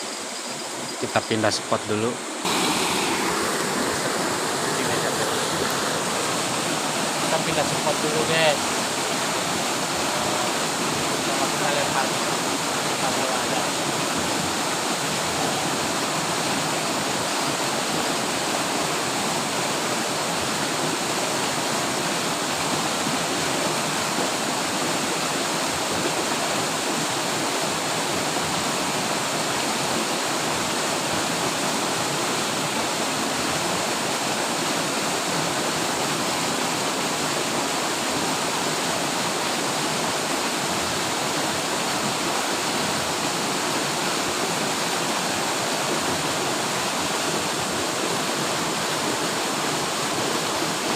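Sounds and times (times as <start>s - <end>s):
river water rushing: 0.0s - 50.9s.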